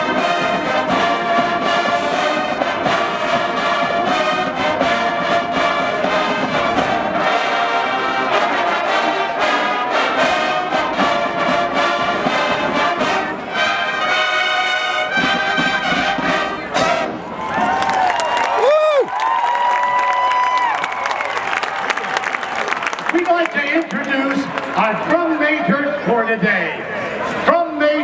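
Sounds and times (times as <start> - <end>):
steady drum beat: 0.0 - 7.4
brass marching band: 0.0 - 27.2.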